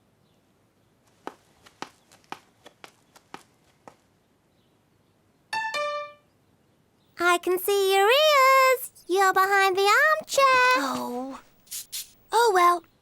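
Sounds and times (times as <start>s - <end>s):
light cartoon footsteps: 1.0s - 4.2s, 10.3s - 12.2s.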